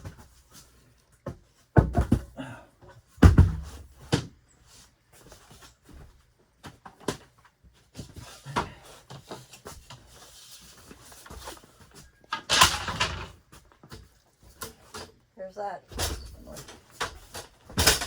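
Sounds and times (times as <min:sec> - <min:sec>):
objects clattering when handled: 0:08.0 - 0:15.3, 0:15.9 - 0:18.0.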